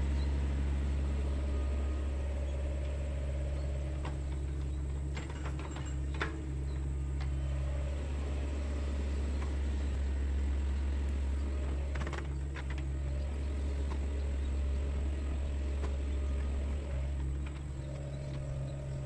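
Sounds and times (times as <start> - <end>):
excavator diesel engine droning: 0.0 - 19.0.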